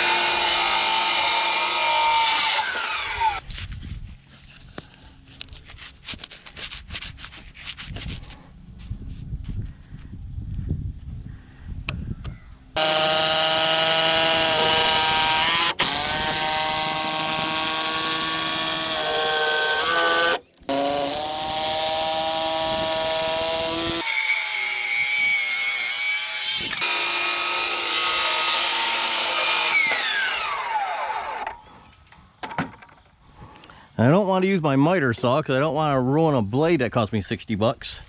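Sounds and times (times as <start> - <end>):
power tool motor whine: 0.0 - 3.4, 12.8 - 31.6.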